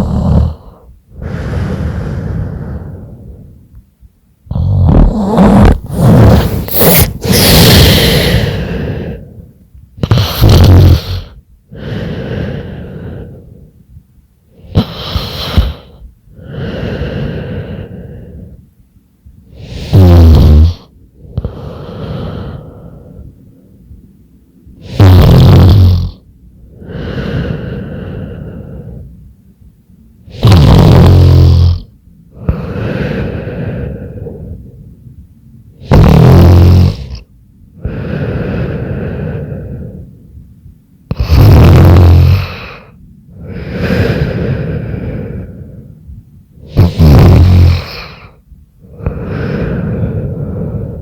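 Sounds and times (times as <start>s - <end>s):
broken snorts: 0.0s - 2.0s, 4.5s - 9.2s, 10.0s - 11.4s, 14.6s - 16.0s, 19.6s - 22.6s, 24.8s - 26.2s, 30.3s - 33.3s, 35.8s - 37.2s, 41.1s - 42.9s, 46.6s - 50.2s
woman snoring: 0.0s - 3.3s, 4.5s - 9.3s, 10.0s - 13.4s, 14.6s - 18.5s, 19.5s - 23.1s, 24.8s - 26.2s, 30.3s - 34.5s, 35.8s - 37.2s, 41.1s - 45.5s, 46.6s - 51.0s
soft breath: 0.0s - 3.9s, 5.0s - 10.5s, 11.1s - 20.0s, 20.9s - 25.0s, 26.2s - 30.3s, 32.1s - 35.8s, 37.1s - 41.3s, 42.4s - 46.8s, 47.7s - 51.0s.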